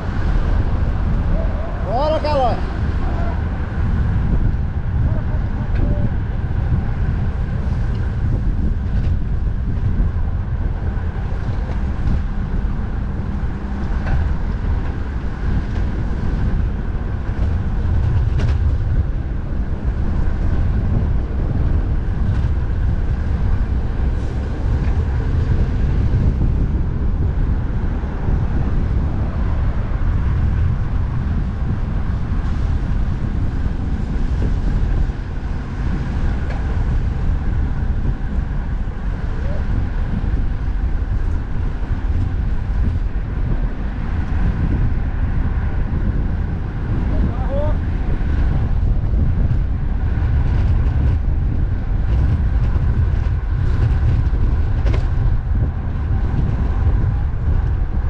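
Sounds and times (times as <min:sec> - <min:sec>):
road traffic: 0:00.0 - 0:58.0
wind buffeting microphone: 0:00.0 - 0:58.0.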